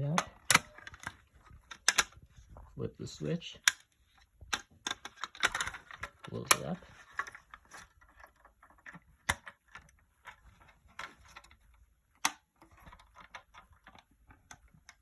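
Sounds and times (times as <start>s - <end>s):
sharp plastic and metal clicks: 0.0s - 2.4s, 3.6s - 10.0s
soft taps and rattles: 0.0s - 15.0s.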